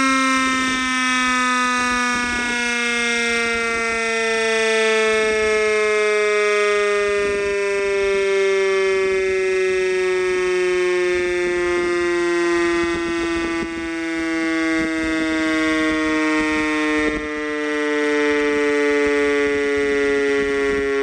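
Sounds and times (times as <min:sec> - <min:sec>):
air raid siren: 0:00.0 - 0:21.0.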